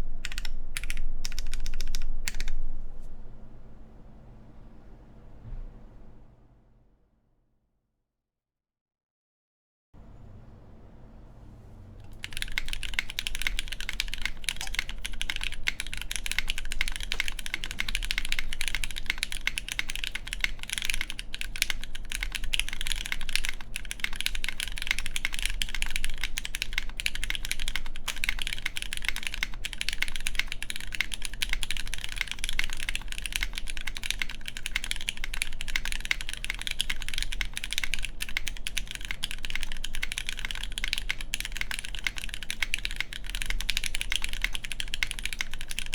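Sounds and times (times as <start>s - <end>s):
fast typing on mechanical keyboard: 0.0s - 2.6s, 12.0s - 45.9s.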